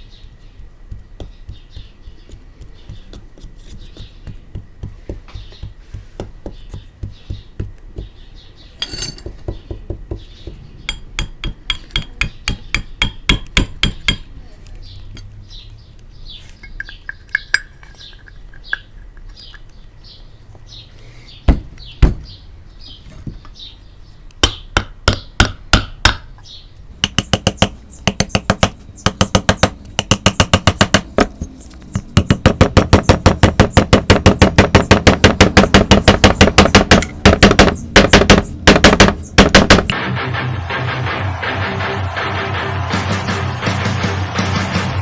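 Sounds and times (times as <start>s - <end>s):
hammer blows: 26.9s - 45.0s.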